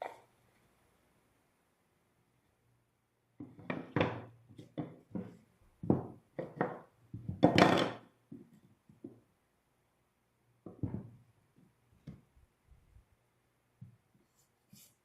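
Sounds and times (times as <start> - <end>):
wooden boards knocking: 3.4 - 8.0.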